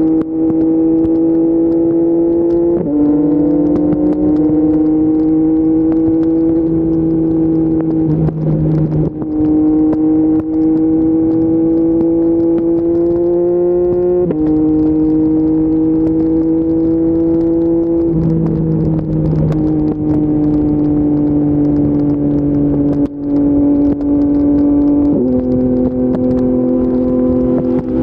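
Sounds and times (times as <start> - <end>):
motorcycle engine accelerating: 0.0 - 28.0
motorcycle upshifting: 0.1 - 28.0.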